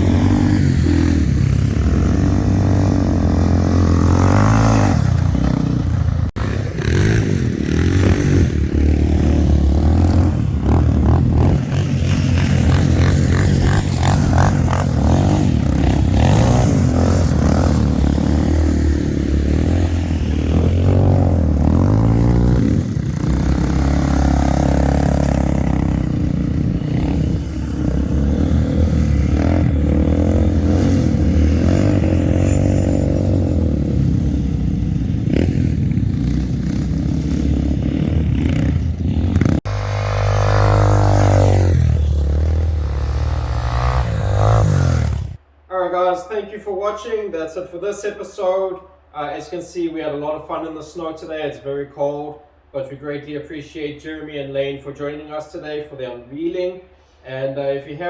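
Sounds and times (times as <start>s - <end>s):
atv engine revving: 0.0s - 45.5s.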